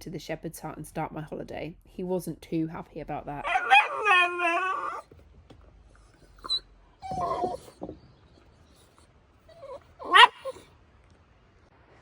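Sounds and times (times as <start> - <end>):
dog whining: 3.4 - 5.1, 6.3 - 7.8, 9.5 - 10.6.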